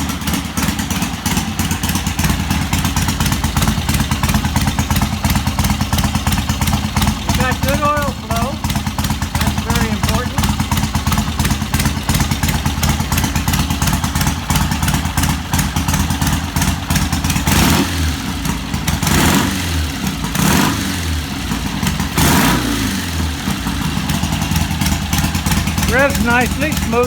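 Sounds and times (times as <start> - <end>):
motorcycle engine idling and revving: 0.0 - 27.0.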